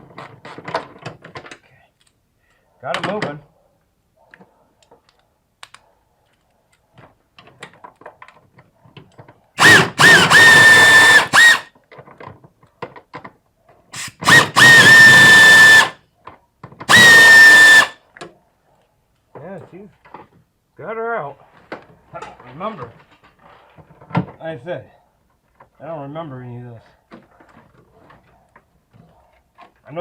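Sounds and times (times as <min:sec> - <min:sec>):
cordless power tool whine: 0:09.6 - 0:11.7, 0:14.0 - 0:16.0, 0:16.9 - 0:18.0.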